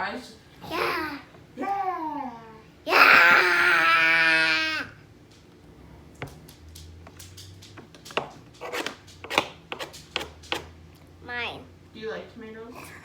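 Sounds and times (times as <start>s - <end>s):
knife cutting on cutting board: 8.1s - 10.7s.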